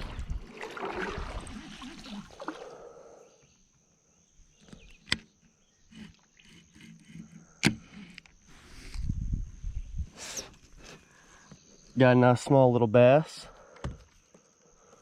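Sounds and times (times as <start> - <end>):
water wash: 0.0 - 2.7.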